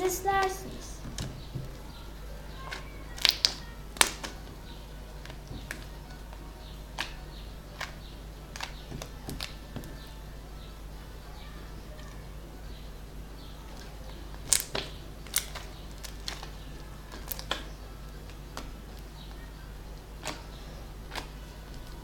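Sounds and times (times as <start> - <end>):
steady low hum: 0.0 - 22.0
slime clicking and popping: 1.2 - 10.2, 13.8 - 19.4, 20.2 - 22.0.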